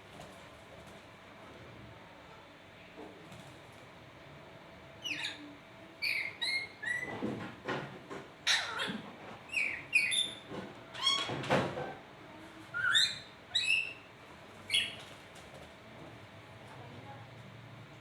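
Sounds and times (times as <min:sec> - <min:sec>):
parrot high-pitched calls: 0:08.4 - 0:10.4, 0:12.7 - 0:14.1.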